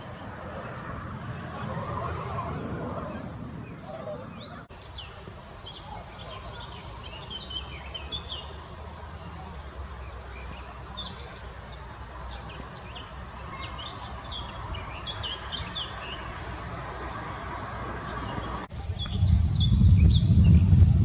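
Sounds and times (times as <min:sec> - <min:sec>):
small birds chirping and singing: 0:00.0 - 0:16.6, 0:17.2 - 0:21.0
steady low rumble: 0:18.7 - 0:21.0.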